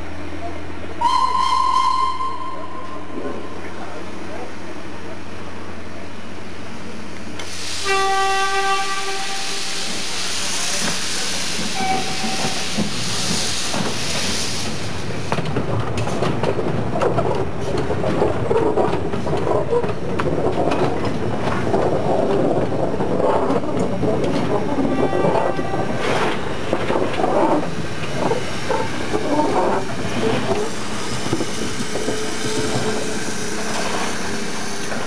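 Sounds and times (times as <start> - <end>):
steam locomotive whistle: 1.0 - 3.1, 7.7 - 9.8, 11.7 - 12.8
train clattering along rails: 7.2 - 35.0
steam hissing: 7.4 - 15.5, 24.4 - 35.0.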